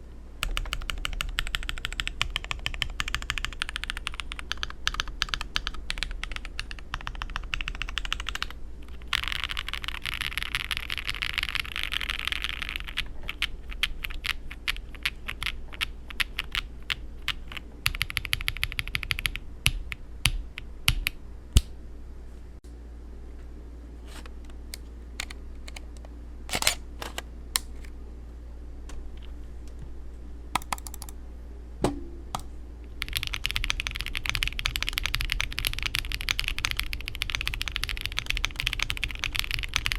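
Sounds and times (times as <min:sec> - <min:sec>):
mechanical keyboard typing: 0:00.4 - 0:21.2, 0:30.6 - 0:31.2, 0:33.0 - 0:39.9.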